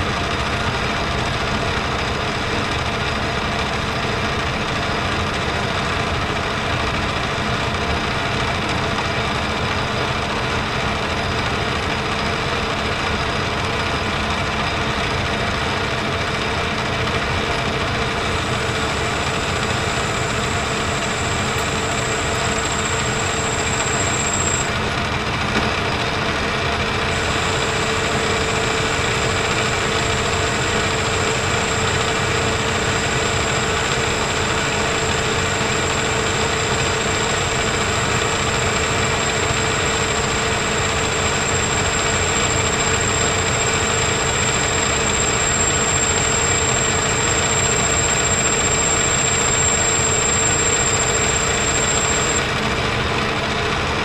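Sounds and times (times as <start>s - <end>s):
metal lathe machine noise: 0.0s - 54.0s
high whine: 15.3s - 25.4s, 26.2s - 53.4s.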